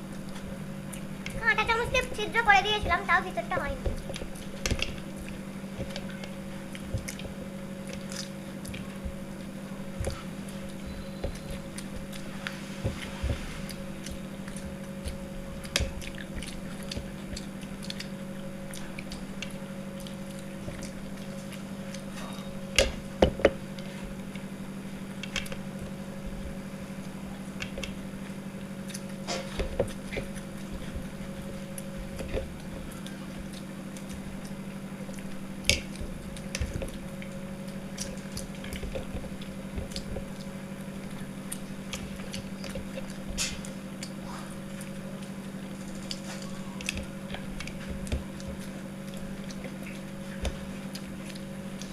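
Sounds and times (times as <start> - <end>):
low electrical hum: 0.0 - 51.9
people chewing food: 0.0 - 51.9.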